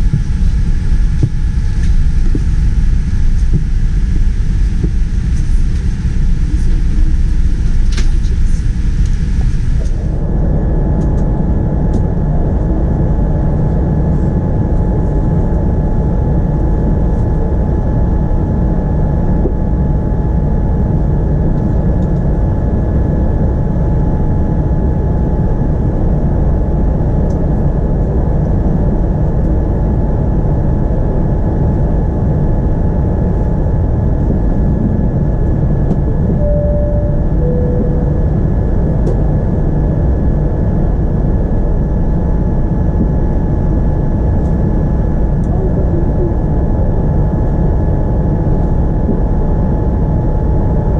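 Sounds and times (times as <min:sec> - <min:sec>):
airliner cabin engine rush: 0:00.0 - 0:50.9
faint constant whine: 0:00.0 - 0:50.9
two-note falling cabin chime: 0:36.4 - 0:38.5.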